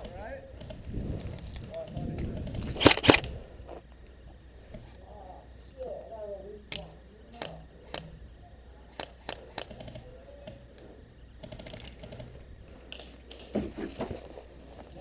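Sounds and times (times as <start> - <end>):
airsoft guns firing: 2.5 - 3.3.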